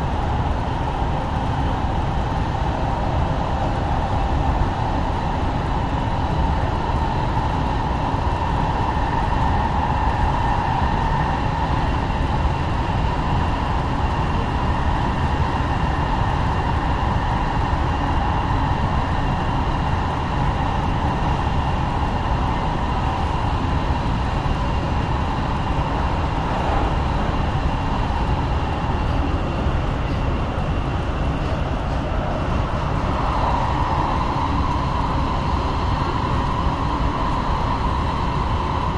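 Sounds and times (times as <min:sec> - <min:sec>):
faint high whine: 0:00.0 - 0:38.9
train rumbling and rolling: 0:00.0 - 0:38.9.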